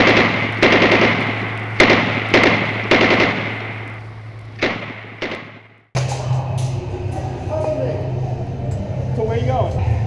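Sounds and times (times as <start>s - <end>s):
airsoft guns firing: 0.0s - 5.8s
steady low hum: 0.0s - 5.8s.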